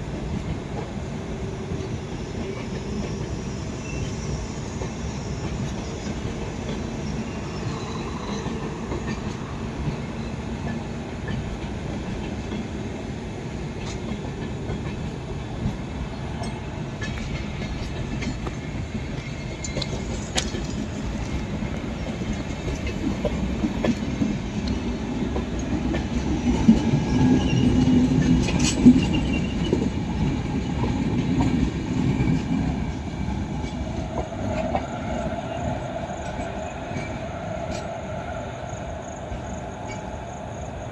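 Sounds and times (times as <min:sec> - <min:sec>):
train wheels clattering over rail joints: 0:07.6 - 0:35.0.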